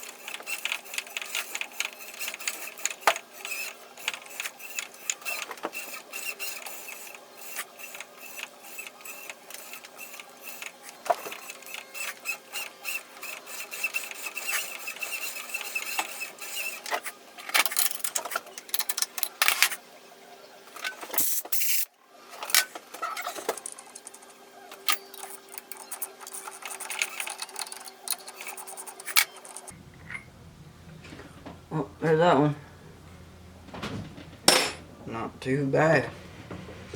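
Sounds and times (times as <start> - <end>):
machine rattling and scraping: 0.0 - 19.8, 22.4 - 36.9.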